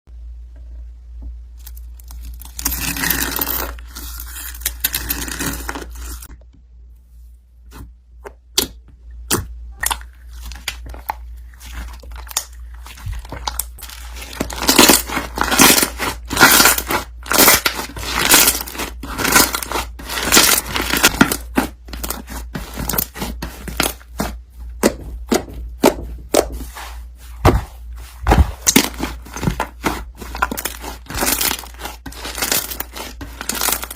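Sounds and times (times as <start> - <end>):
slime stretching and crackling: 9.7 - 33.9.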